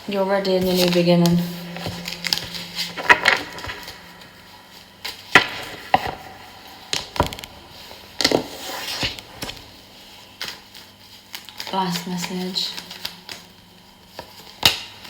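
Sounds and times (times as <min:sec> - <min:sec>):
cards shuffled and laid down: 0:00.6 - 0:04.4.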